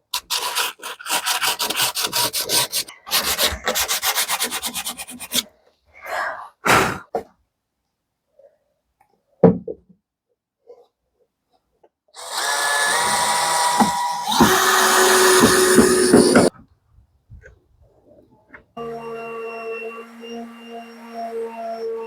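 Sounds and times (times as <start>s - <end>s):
sandpaper rubbing on wood: 0.2s - 5.4s.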